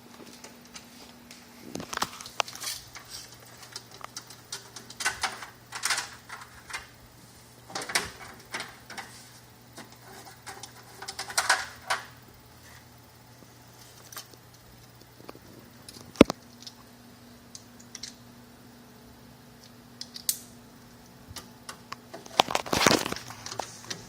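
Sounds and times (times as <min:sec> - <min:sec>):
clicks and knocks of handled parts: 0:01.7 - 0:06.9, 0:07.7 - 0:09.2, 0:09.8 - 0:12.1, 0:17.5 - 0:18.2, 0:19.6 - 0:20.5.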